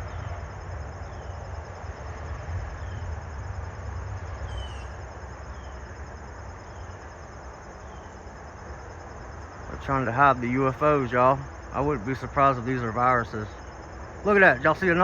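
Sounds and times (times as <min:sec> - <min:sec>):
insects trilling: 0:00.0 - 0:15.0
bird chirping: 0:04.3 - 0:05.8, 0:07.8 - 0:08.2.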